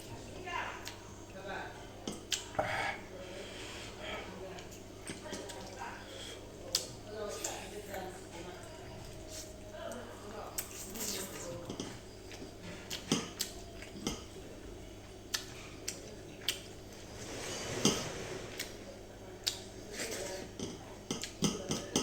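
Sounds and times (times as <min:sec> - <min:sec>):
cutlery clinking against a dish: 0:10.7 - 0:14.4, 0:17.4 - 0:18.8, 0:19.5 - 0:22.0.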